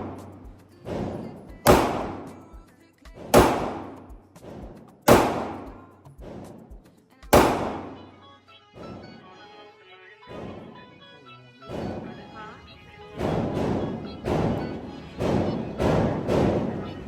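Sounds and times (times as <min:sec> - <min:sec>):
gunshots echoing: 0:00.0 - 0:02.4, 0:03.2 - 0:06.6, 0:07.3 - 0:08.1
background music: 0:00.0 - 0:17.0.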